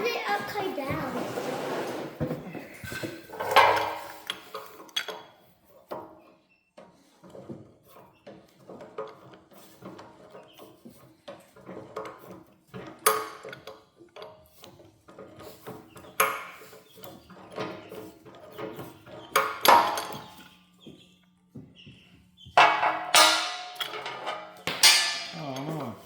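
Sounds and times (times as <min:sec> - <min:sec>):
metal parts tapping and rattling: 0:02.8 - 0:06.2, 0:06.8 - 0:21.0, 0:22.5 - 0:26.0
sharp ringing metal clanks: 0:22.6 - 0:25.6.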